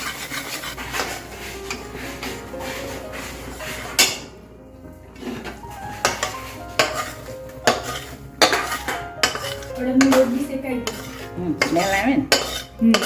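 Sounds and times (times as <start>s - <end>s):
spatula scraping flour in pan: 0.0s - 4.3s, 5.2s - 13.0s
spatula clanking against pan: 4.0s - 4.3s, 6.0s - 13.0s.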